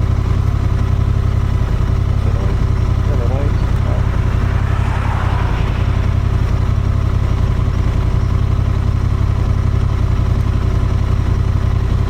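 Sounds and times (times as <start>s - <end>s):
motorcycle engine running steadily: 0.0s - 3.9s, 6.7s - 12.0s.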